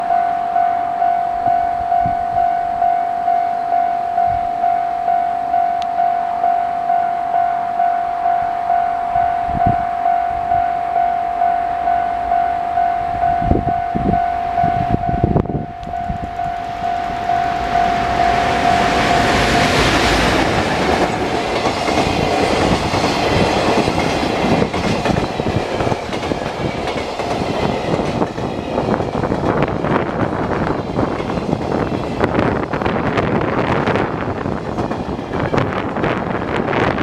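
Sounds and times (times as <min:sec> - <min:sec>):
level-crossing warning bell: 0:00.0 - 0:29.3.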